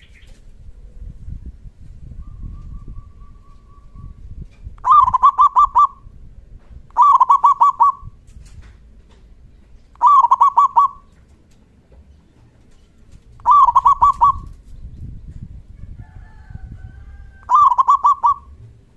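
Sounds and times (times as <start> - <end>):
dove cooing: 4.8 - 6.1, 6.9 - 8.2, 10.0 - 11.2, 13.4 - 14.6, 17.3 - 18.7.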